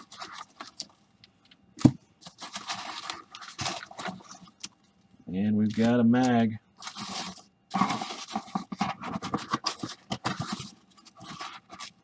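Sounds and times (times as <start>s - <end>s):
hands rustling packing peanuts: 0.0s - 1.0s, 1.8s - 4.7s, 6.8s - 12.0s.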